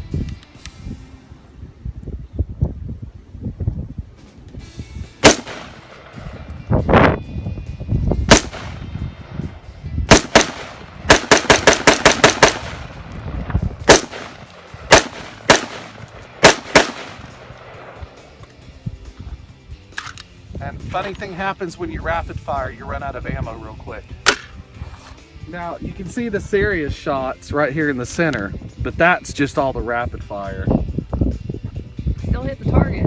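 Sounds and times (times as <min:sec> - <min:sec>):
rifle shots: 0:05.2 - 0:06.2, 0:08.3 - 0:08.9, 0:10.1 - 0:13.2, 0:13.8 - 0:18.2.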